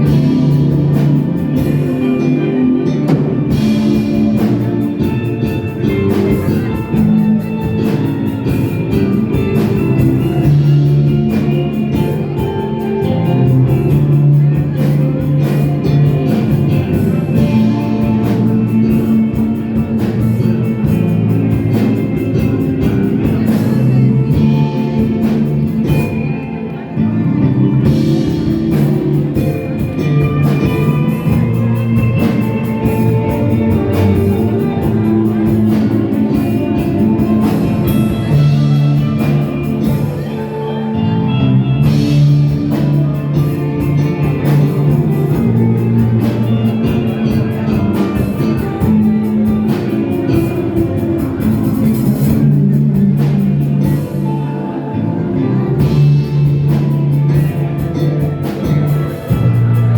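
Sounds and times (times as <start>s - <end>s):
live rock band playing: 0.0s - 59.9s
person singing: 0.0s - 59.9s.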